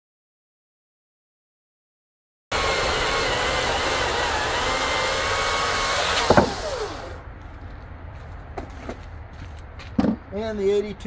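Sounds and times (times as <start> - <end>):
cordless chainsaw cutting log: 2.5 - 7.2
sharp knock: 6.2 - 6.6.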